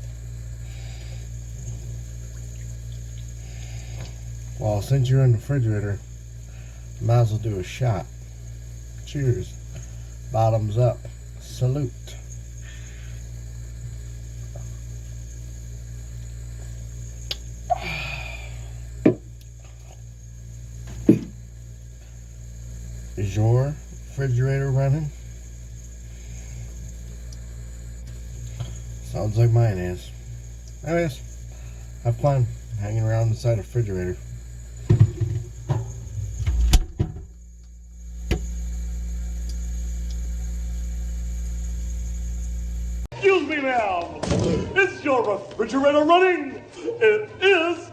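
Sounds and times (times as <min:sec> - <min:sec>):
low hum: 0:00.0 - 0:43.1
refrigerator click: 0:35.0 - 0:37.3.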